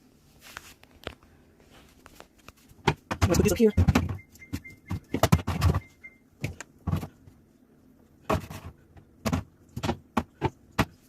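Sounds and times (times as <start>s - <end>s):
hard items knocking on plastic: 2.8s - 7.2s, 8.2s - 11.0s.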